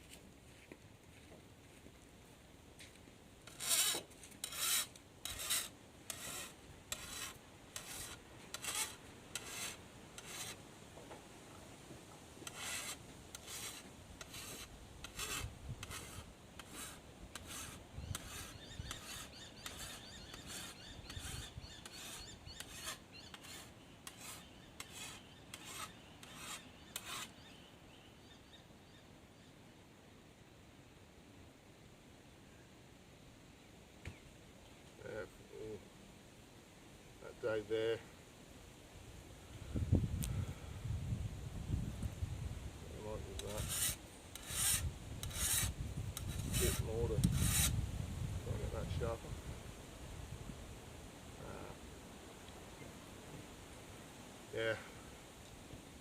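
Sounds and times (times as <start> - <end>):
file rasping on steel blade: 3.5 - 10.6, 12.4 - 27.4, 43.4 - 47.8.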